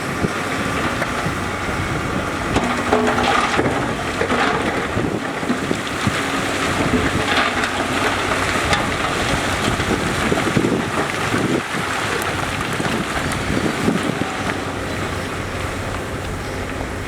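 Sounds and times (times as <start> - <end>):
heavy diesel machinery running: 0.0 - 17.0
wind buffeting microphone: 0.0 - 17.0
scattered knocks: 2.5 - 11.7.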